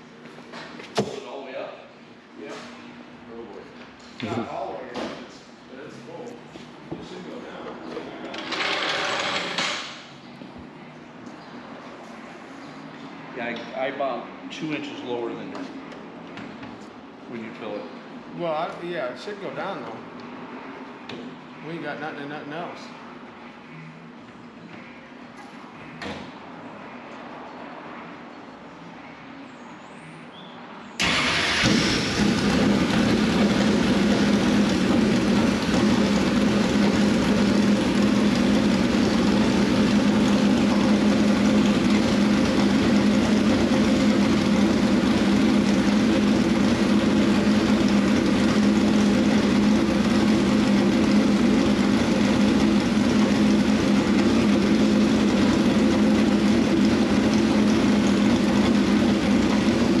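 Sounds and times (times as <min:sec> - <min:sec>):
race car engine idling loudly: 0:31.0 - 1:00.0.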